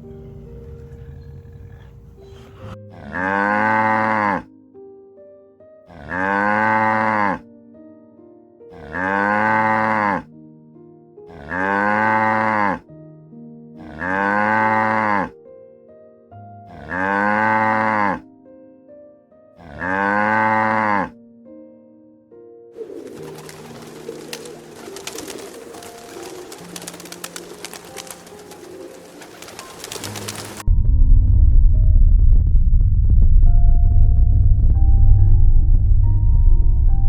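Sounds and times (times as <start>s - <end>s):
soft background music: 0.0s - 37.0s
cow mooing: 0.7s - 4.5s, 5.9s - 7.4s, 8.7s - 10.3s, 11.3s - 12.8s, 13.8s - 15.4s, 16.7s - 18.2s, 19.6s - 21.2s.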